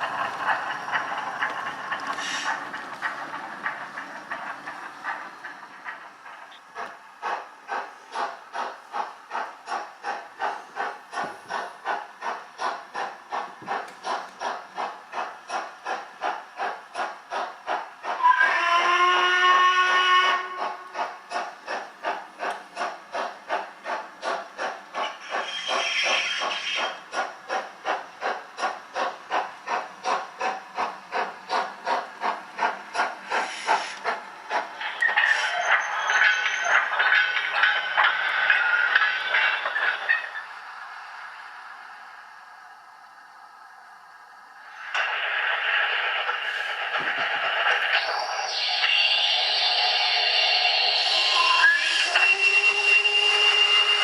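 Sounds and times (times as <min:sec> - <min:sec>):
steam locomotive exhaust chuffs: 0:00.0 - 0:43.6, 0:44.2 - 0:54.0
steam whistle: 0:18.2 - 0:20.9, 0:48.5 - 0:54.0.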